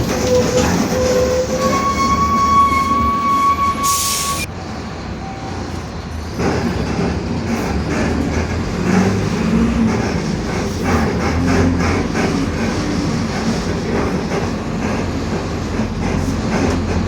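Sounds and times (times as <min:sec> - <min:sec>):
bus engine rumble: 0:00.0 - 0:02.4, 0:03.9 - 0:17.0
bus body rattles: 0:06.1 - 0:17.0.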